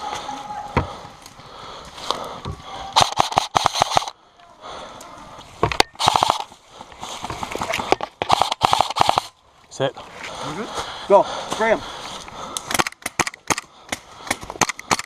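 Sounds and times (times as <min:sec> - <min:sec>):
airsoft guns firing bursts: 0:03.0 - 0:04.1, 0:06.0 - 0:06.5, 0:08.3 - 0:09.3.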